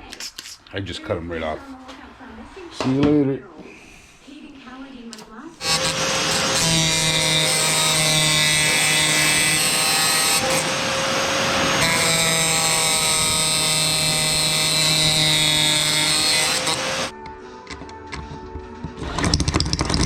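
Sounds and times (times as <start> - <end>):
power tool drilling rivets: 5.6 - 17.1, 19.0 - 20.0.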